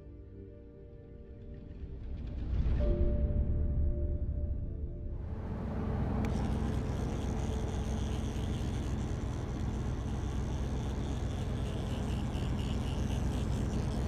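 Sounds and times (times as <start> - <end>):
vehicle engine running: 5.3 - 14.0.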